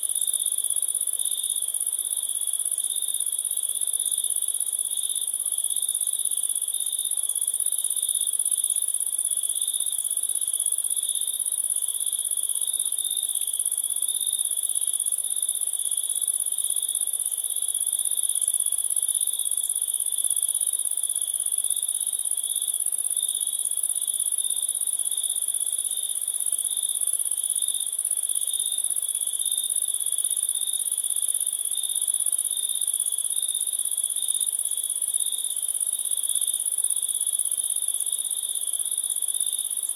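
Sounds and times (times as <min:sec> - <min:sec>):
crickets chirping: 0:24.3 - 0:39.9.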